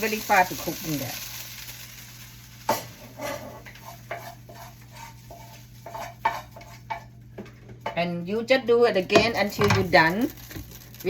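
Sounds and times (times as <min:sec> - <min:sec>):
vegetables sizzling in a pan: 0:00.0 - 0:11.0
spatula scraping a pan: 0:02.7 - 0:08.0.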